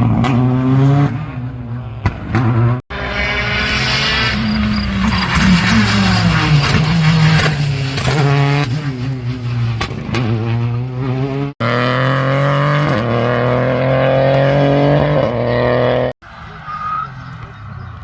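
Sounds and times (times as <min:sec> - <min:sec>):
rally car engine at high revs: 0:00.0 - 0:18.0.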